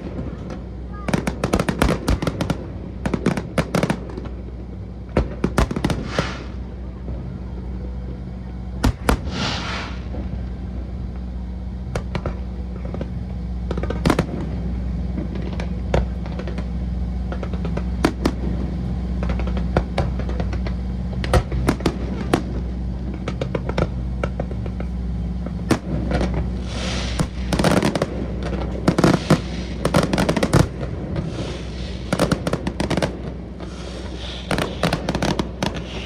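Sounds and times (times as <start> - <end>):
firework shell bursts: 5.3 - 6.7, 8.8 - 10.4, 25.7 - 36.0
firework crackling hiss: 5.4 - 6.9, 8.8 - 11.4, 25.6 - 36.0.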